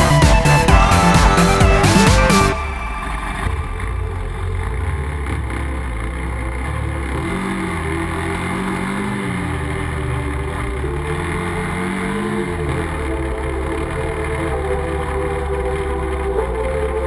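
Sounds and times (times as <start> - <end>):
quad bike engine running: 3.4 - 17.0.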